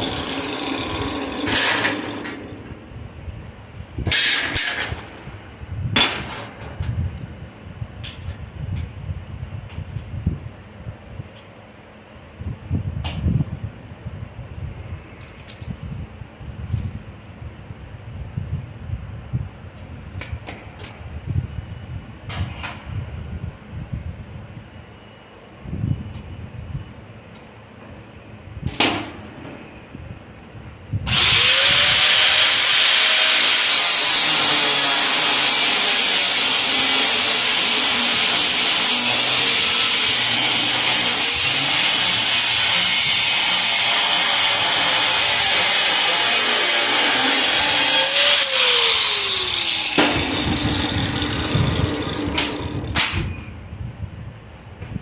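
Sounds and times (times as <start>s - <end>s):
angle grinder grinding steel: 0.0s - 2.5s, 31.1s - 53.0s.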